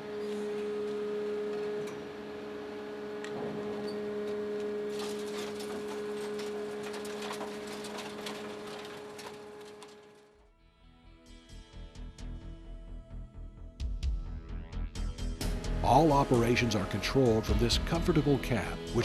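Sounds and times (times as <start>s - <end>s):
hydraulic machine humming: 0.0s - 10.2s, 15.4s - 19.0s.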